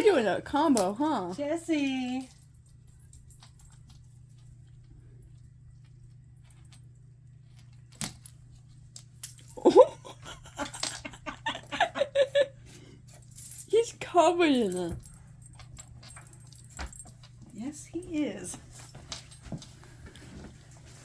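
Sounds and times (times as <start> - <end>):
faint metallic jingling: 0.0 - 7.0, 13.1 - 20.0
person laughing in bursts: 9.6 - 12.6.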